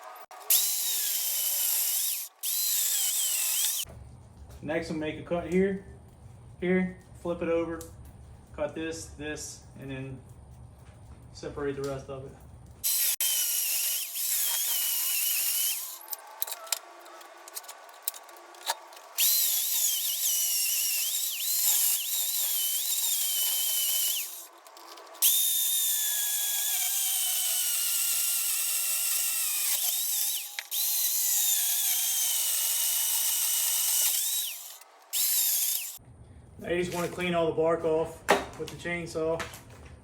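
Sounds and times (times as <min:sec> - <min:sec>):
electric chainsaw cutting wood: 0:00.0 - 0:03.8, 0:12.8 - 0:16.8, 0:19.0 - 0:24.5, 0:25.2 - 0:36.0.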